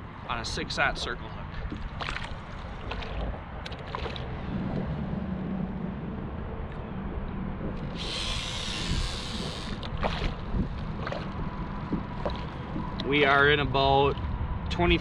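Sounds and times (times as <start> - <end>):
fishing reel whirring: 7.8 - 10.3.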